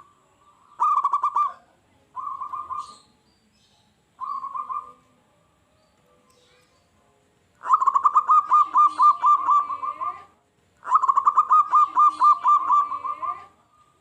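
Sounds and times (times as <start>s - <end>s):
dove cooing: 0.0s - 3.1s, 4.2s - 5.2s, 7.6s - 14.0s.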